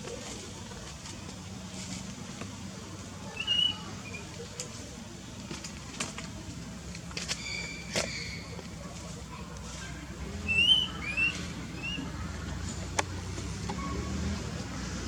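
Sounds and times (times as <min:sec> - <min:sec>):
baby monkey whistle-like calls: 0:03.4 - 0:04.2, 0:10.4 - 0:12.1.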